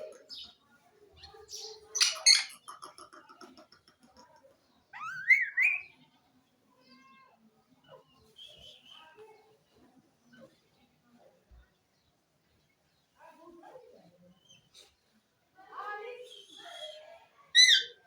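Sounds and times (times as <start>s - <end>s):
parrot squawking and calling: 2.0s - 2.7s, 4.9s - 5.9s, 17.5s - 18.0s.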